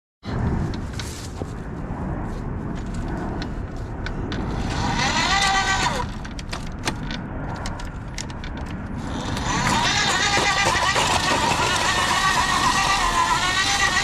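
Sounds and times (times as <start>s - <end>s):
earth auger boring into soil: 4.3s - 6.4s, 9.0s - 14.0s.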